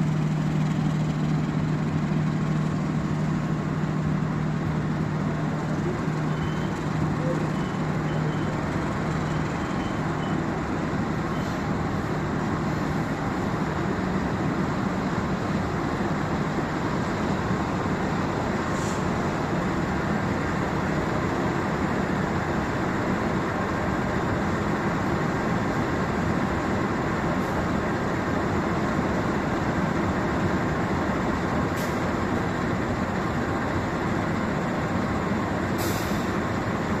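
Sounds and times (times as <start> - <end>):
train rumbling on track: 0.0 - 37.0.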